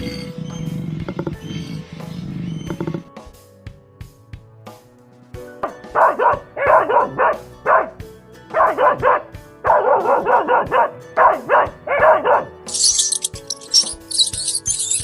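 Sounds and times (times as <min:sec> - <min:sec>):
background music: 0:00.0 - 0:15.0
dog barking: 0:05.9 - 0:13.9.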